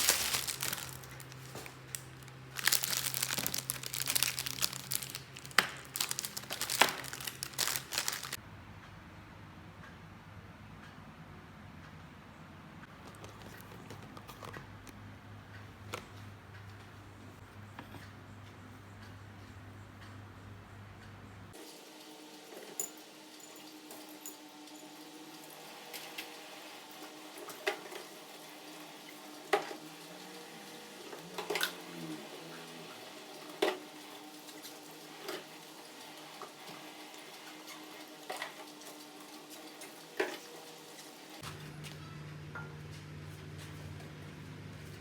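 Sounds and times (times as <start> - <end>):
kitchen items clicking and knocking: 0.0 - 8.4.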